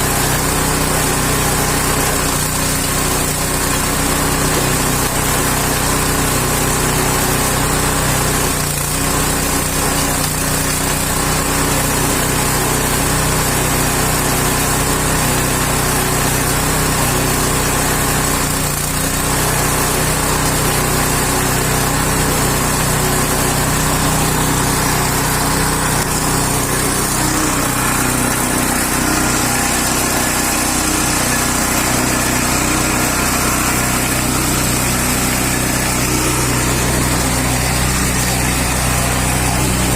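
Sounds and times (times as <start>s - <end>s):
small engine running: 0.0s - 39.9s.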